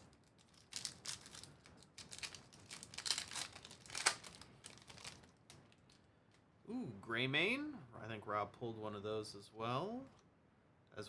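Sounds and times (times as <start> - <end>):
card pack wrapper crinkling: 0.2 - 6.0.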